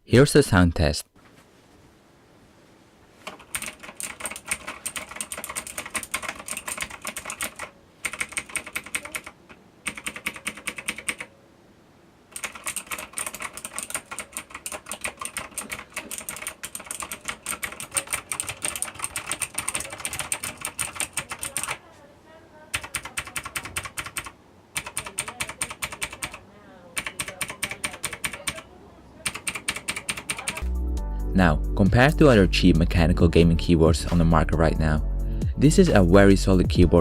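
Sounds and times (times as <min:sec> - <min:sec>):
clicky mechanical keyboard typing: 0:03.2 - 0:11.3, 0:12.3 - 0:21.8, 0:22.7 - 0:26.4, 0:27.0 - 0:30.7.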